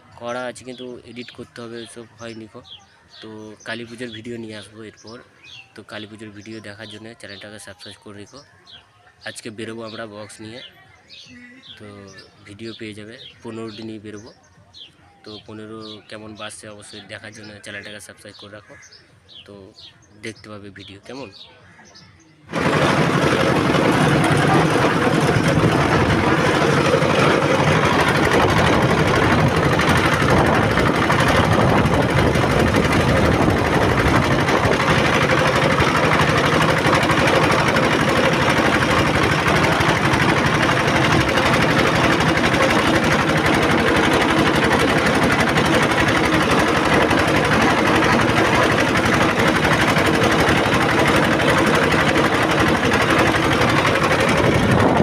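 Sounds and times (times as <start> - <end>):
engine running loudly: 22.5 - 55.0.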